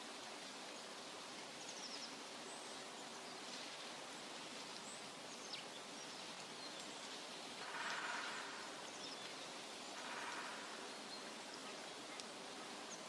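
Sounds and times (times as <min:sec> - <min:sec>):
soft steady forest hiss: 0:00.0 - 0:13.0.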